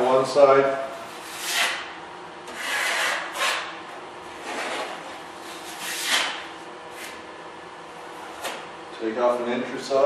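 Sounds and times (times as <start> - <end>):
taping knife scraping compound: 1.1 - 1.9, 2.5 - 3.7, 4.4 - 6.4.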